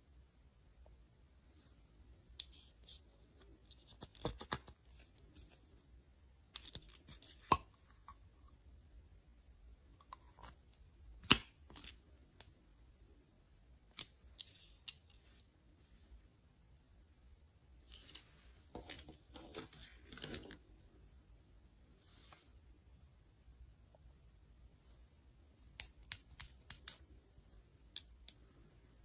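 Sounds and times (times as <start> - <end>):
plastic toy pieces clicking: 25.8 - 27.0.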